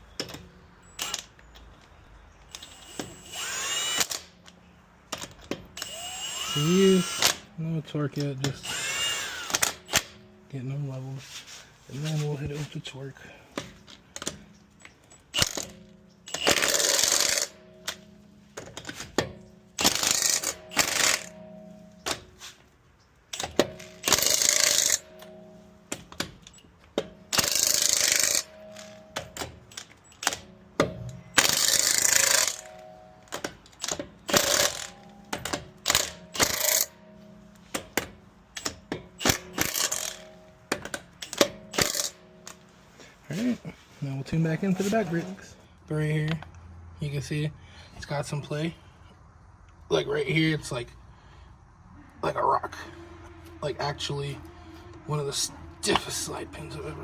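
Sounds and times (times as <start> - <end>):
ratchet wrench clicking: 2.5 - 4.4, 5.1 - 7.5, 8.4 - 10.2, 14.2 - 18.0, 19.8 - 22.2, 23.3 - 32.7, 33.3 - 37.0, 37.7 - 42.6
metal tools clinking: 4.1 - 46.5, 52.3 - 57.0.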